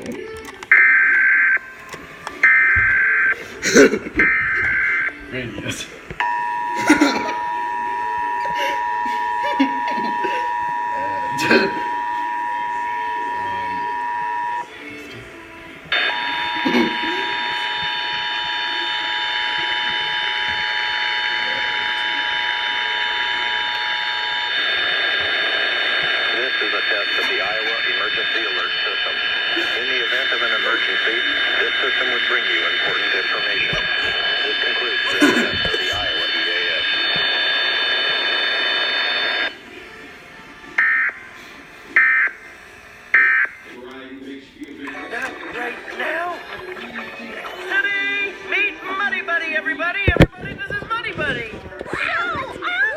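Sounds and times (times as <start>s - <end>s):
harsh electronic data bursts: 0.0s - 14.8s, 15.9s - 39.6s, 42.0s - 43.8s
two-tone alert signal: 4.2s - 5.2s, 6.2s - 14.8s, 16.0s - 24.5s.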